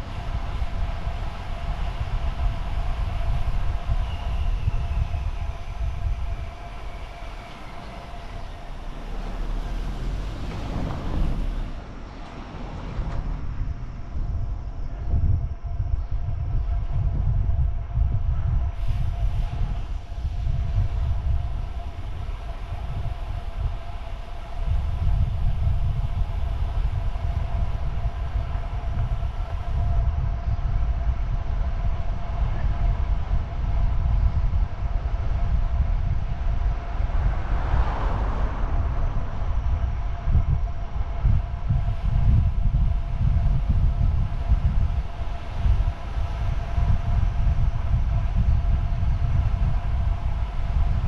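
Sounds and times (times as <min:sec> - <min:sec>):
thin whine: 0:00.0 - 0:12.3
wind buffeting microphone: 0:00.0 - 0:51.0
hiss: 0:18.8 - 0:30.1.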